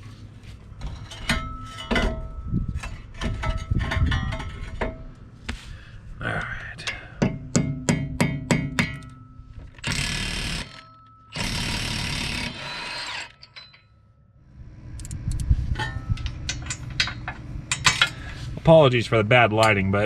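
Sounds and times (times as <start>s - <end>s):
power tool bursts: 9.8s - 13.4s.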